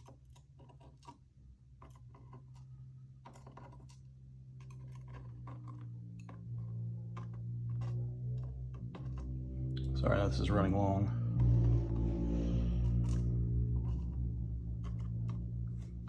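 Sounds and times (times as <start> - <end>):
metal pins clicking on hard surface: 0.0 - 9.4
steady low hum: 1.2 - 16.0.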